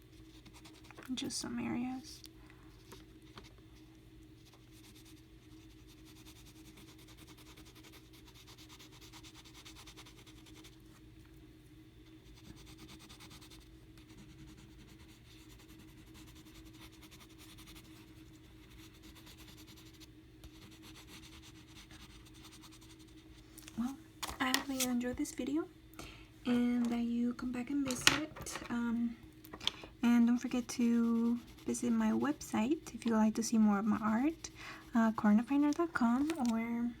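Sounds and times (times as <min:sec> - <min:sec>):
faint steady hum: 0:00.0 - 0:37.0
colouring tool scratching paper: 0:04.4 - 0:10.8, 0:12.2 - 0:23.2, 0:30.0 - 0:36.6.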